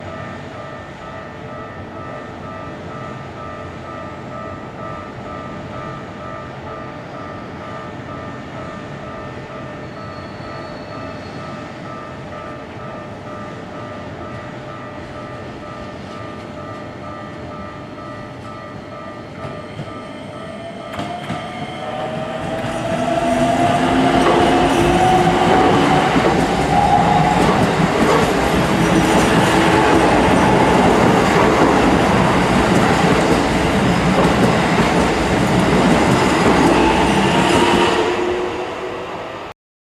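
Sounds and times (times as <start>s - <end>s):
train wheels clacking on rail joints: 20.9s - 37.8s.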